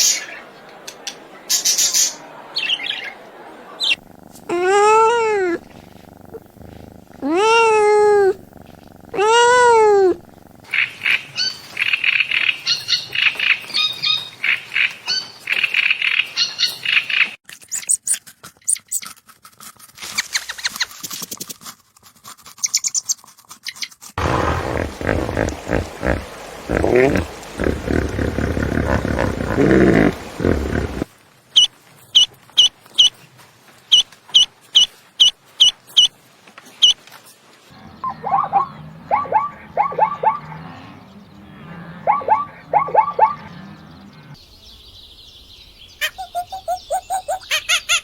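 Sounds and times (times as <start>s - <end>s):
drawn-out animal calls: 3.7s - 16.4s, 24.2s - 33.2s.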